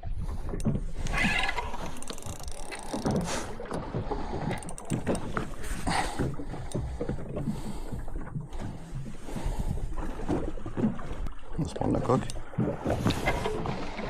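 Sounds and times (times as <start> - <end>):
water sloshing against boat hull: 0.0 - 14.0
water splashes: 0.0 - 14.0.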